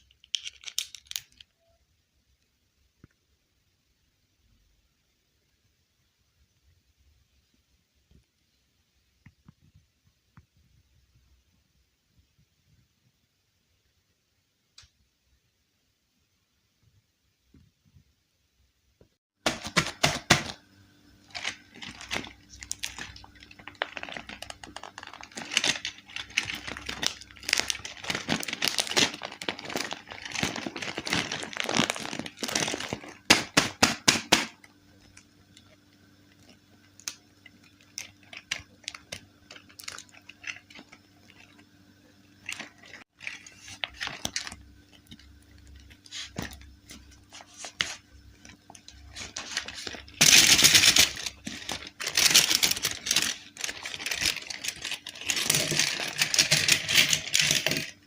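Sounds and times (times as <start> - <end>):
plastic and cardboard crinkling: 0.0 - 1.5, 19.4 - 20.6, 21.2 - 58.0.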